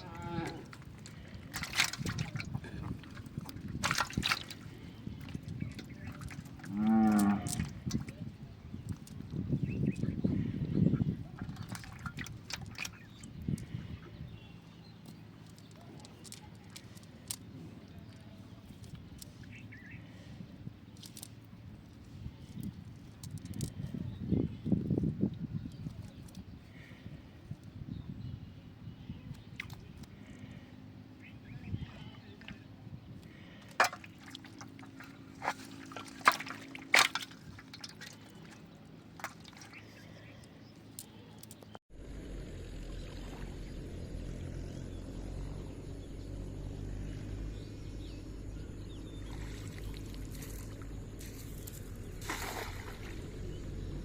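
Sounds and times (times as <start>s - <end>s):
water splashing: 0.3s - 8.1s, 11.3s - 13.3s, 33.4s - 40.2s, 48.7s - 53.8s
low rumble: 41.9s - 54.0s.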